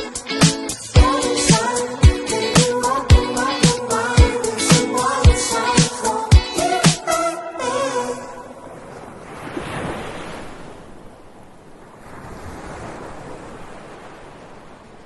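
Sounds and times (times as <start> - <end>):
waves breaking on beach: 8.0 - 15.0.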